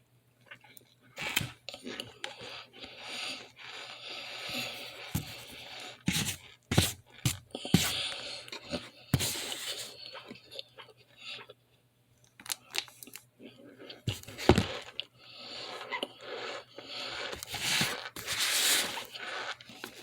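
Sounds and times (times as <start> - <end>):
cornstarch crunching: 14.0 - 20.0.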